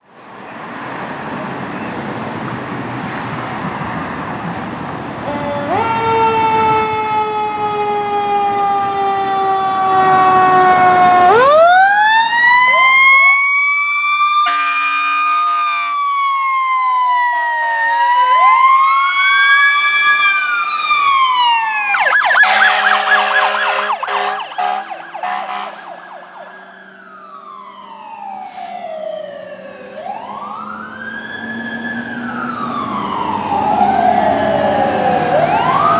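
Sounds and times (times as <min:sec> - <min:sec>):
sirens rising and falling: 0:05.1 - 0:35.9
air horn blasts: 0:14.4 - 0:16.1, 0:22.4 - 0:26.4.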